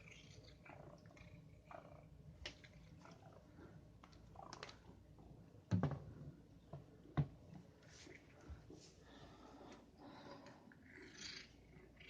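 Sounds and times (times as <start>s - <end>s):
cat purring: 0.0s - 3.4s.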